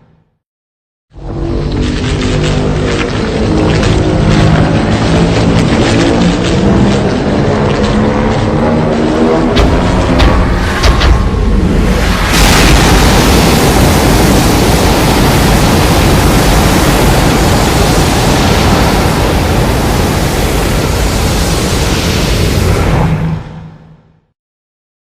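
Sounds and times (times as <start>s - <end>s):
loud rushing noise with deep rumble: 1.1s - 24.3s.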